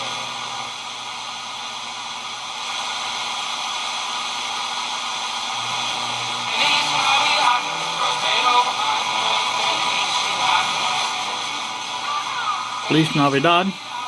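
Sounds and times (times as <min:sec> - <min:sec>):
radio static hiss: 0:03.8 - 0:14.0
radio broadcast: 0:08.6 - 0:14.0.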